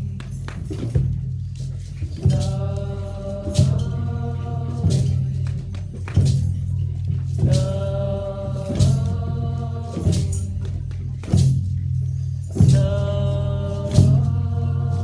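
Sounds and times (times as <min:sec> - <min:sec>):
voices singing a slow chant: 0:02.2 - 0:05.8, 0:07.3 - 0:11.2, 0:12.5 - 0:15.0.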